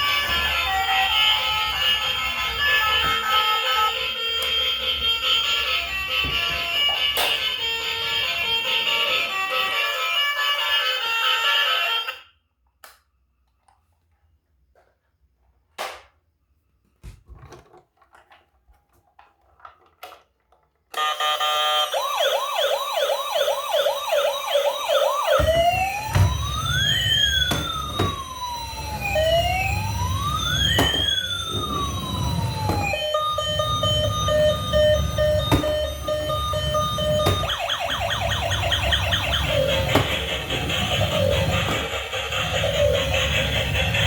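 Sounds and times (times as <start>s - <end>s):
emergency vehicle siren: 0.0s - 12.2s, 21.0s - 44.0s.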